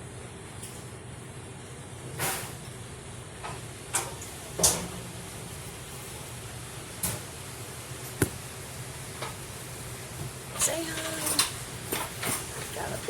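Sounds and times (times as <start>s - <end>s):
sharp knocks: 8.2s - 8.4s.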